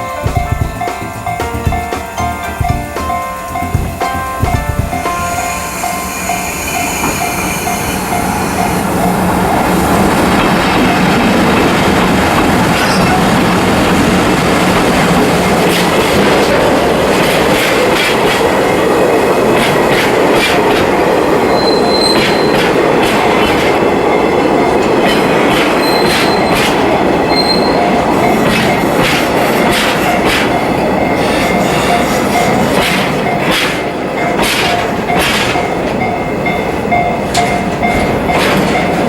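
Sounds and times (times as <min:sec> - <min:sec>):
high wheel squeals: 0:05.0 - 0:09.7, 0:12.8 - 0:13.4, 0:21.4 - 0:22.6, 0:25.8 - 0:28.8
wheels clicking over rail joints: 0:10.2 - 0:39.0.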